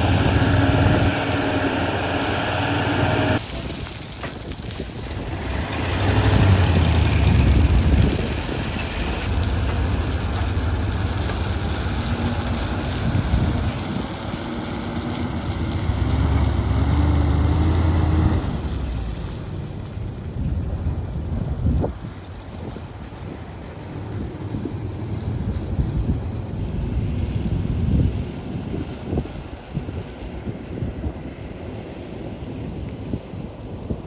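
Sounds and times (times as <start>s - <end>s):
excavator diesel engine rumbling: 0.0s - 26.6s.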